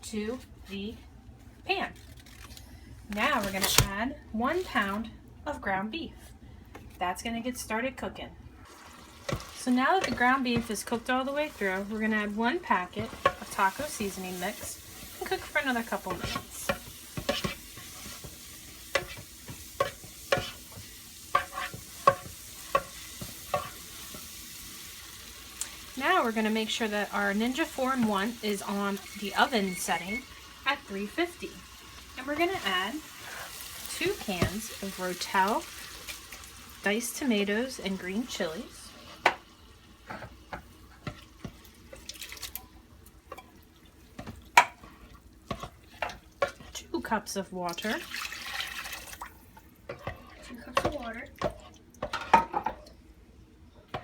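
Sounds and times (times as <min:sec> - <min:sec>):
meat sizzling in a pan: 0:08.6 - 0:10.3, 0:11.2 - 0:42.7
food emptied into pan: 0:48.0 - 0:49.4.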